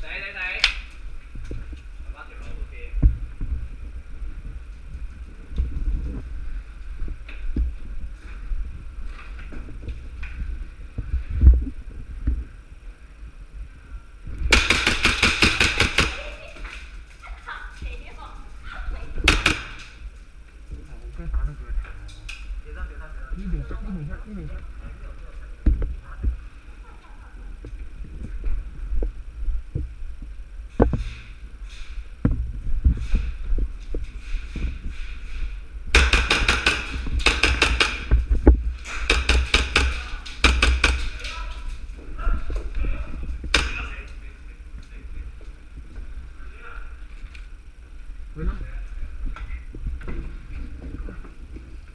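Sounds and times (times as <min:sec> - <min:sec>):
airsoft gun burst: 0:14.5 - 0:16.4, 0:19.3 - 0:19.9, 0:35.9 - 0:38.1, 0:38.8 - 0:41.2, 0:43.5 - 0:43.9.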